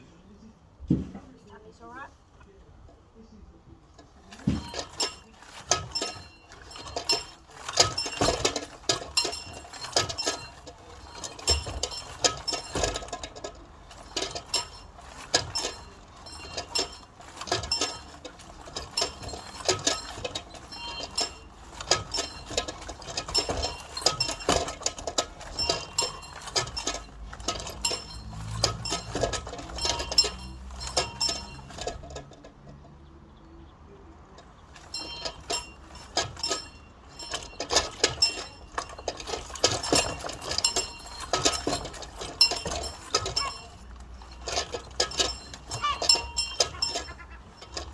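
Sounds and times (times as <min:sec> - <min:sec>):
small bell ringing: 0:34.8 - 0:47.9.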